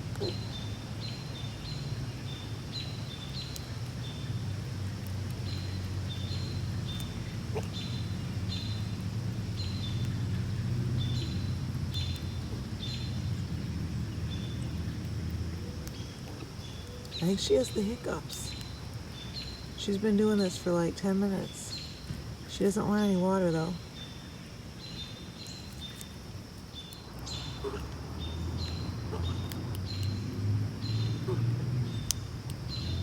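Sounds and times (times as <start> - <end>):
low background rumble: 0.0 - 33.0
squirrel squeaking: 26.9 - 28.0, 28.8 - 30.1.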